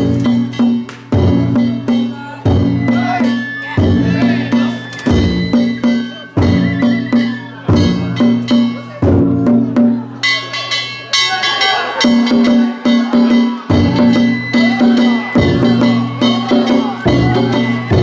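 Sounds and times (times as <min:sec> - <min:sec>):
drum beating steadily: 0:00.0 - 0:18.0
gongs ringing: 0:10.1 - 0:18.0.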